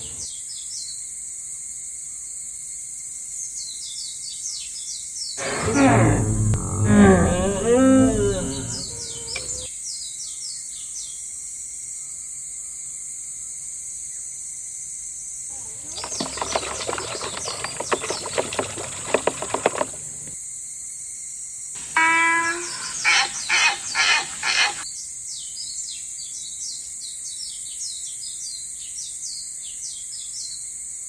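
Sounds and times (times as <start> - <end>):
birds chirping: 5.4 - 9.7, 15.6 - 20.3, 21.8 - 24.8.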